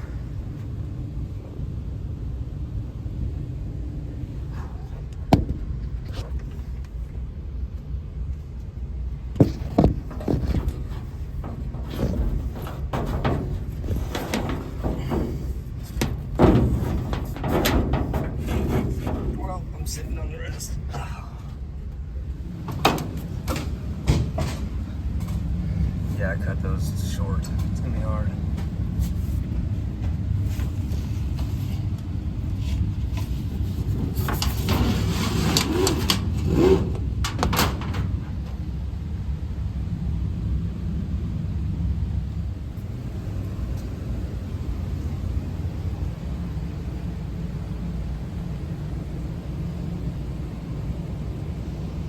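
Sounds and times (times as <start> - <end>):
vehicle engine rumbling: 0.0 - 52.0
knocks and clunks of hard objects: 5.2 - 6.6, 9.3 - 19.5, 22.6 - 25.5.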